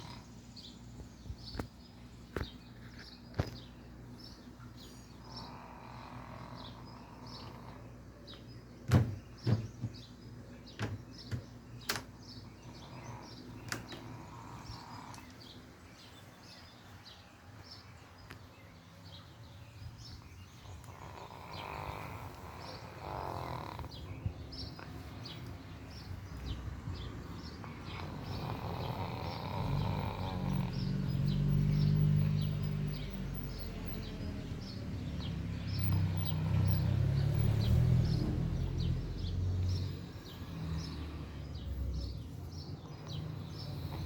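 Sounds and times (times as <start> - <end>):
small dog snoring: 0.0 - 0.3, 5.1 - 8.0, 12.6 - 15.5, 20.6 - 24.9, 27.4 - 34.8, 42.8 - 44.0
birds chirping: 0.0 - 44.0.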